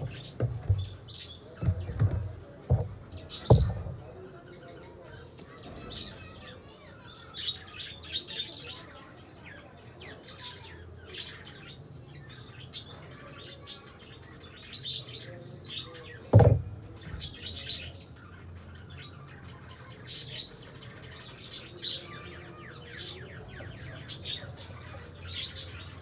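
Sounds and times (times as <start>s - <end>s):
loud thump: 0.0s - 1.0s, 1.6s - 4.0s, 16.4s - 16.8s
small birds chirping: 0.0s - 26.0s.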